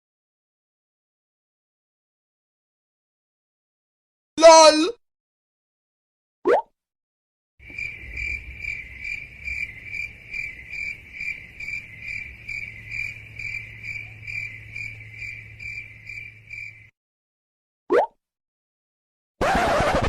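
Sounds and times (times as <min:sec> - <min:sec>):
crickets chirping: 0:07.6 - 0:16.9.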